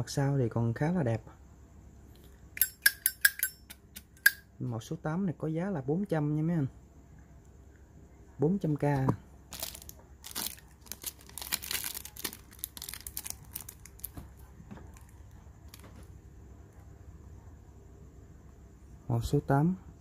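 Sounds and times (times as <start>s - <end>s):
crinkling rustle with clicks: 9.5s - 16.1s.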